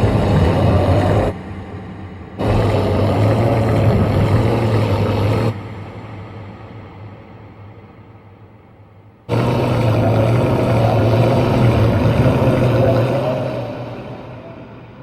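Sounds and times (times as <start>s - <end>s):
deep creature growl: 0.0s - 1.4s, 2.4s - 5.6s, 9.3s - 14.6s.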